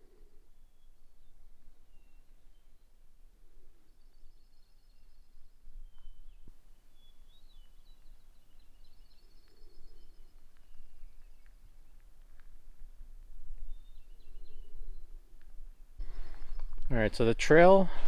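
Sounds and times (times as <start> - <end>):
songbird trill: 0.0 - 12.6, 13.4 - 17.8
wind rumble on microphone: 9.9 - 17.0.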